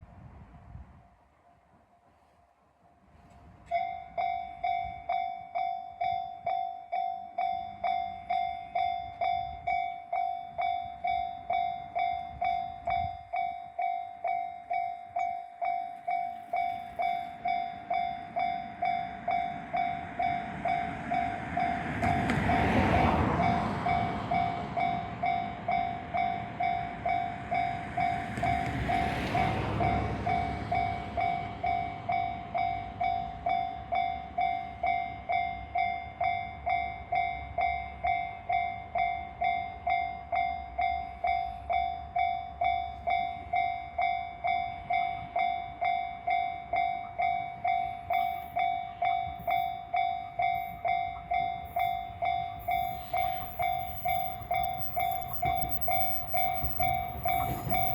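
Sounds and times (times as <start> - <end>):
electric train rumbling past: 3.0 - 57.9
level crossing bell dinging: 47.7 - 57.9.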